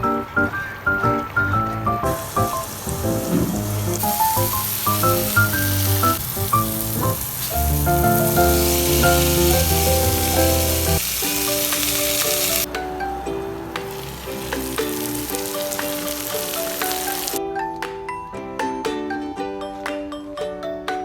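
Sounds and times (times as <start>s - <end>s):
light background music: 0.0s - 21.0s
food sizzling in a pan: 2.0s - 12.7s, 13.8s - 17.4s.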